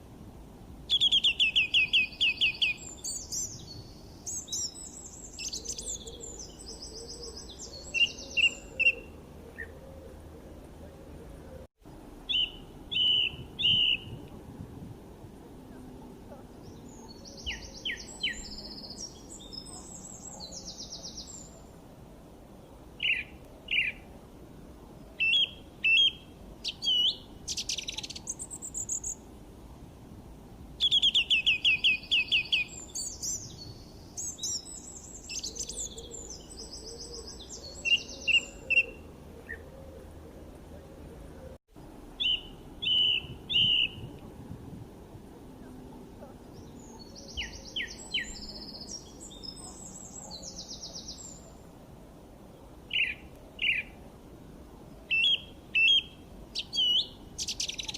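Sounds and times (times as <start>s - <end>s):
small birds chirping and singing: 0.9s - 10.3s, 12.3s - 14.2s, 15.7s - 21.8s, 23.0s - 24.0s, 25.2s - 29.2s, 30.8s - 39.6s, 42.2s - 44.2s, 46.2s - 51.6s, 52.9s - 54.0s, 55.1s - 57.9s.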